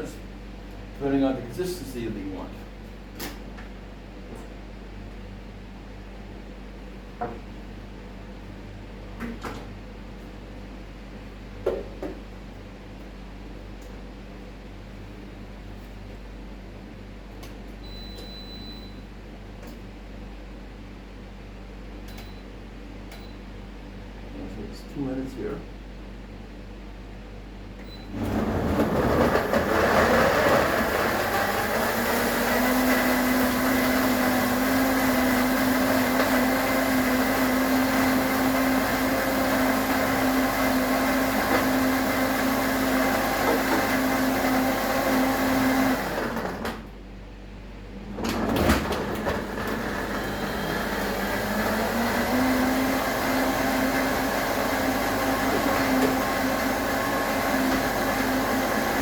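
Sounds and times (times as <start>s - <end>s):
blender motor running: 28.1s - 46.7s, 48.5s - 59.0s
blender knock: 28.2s - 46.8s, 48.3s - 59.0s.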